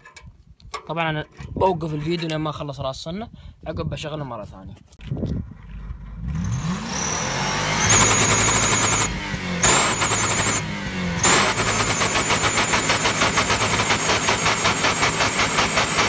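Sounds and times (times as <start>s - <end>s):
car engine revving: 5.5s - 16.0s
high exhaust whistle: 7.0s - 10.6s.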